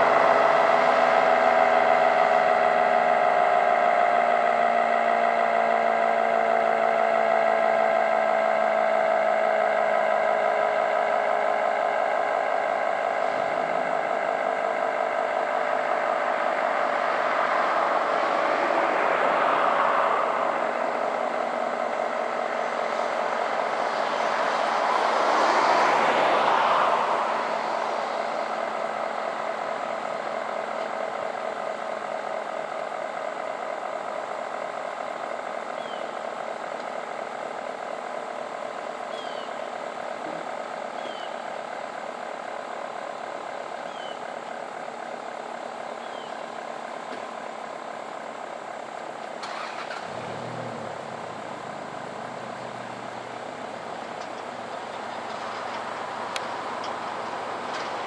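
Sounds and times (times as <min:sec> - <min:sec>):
dual-tone tornado siren: 0:00.0 - 0:33.8, 0:49.4 - 0:58.0.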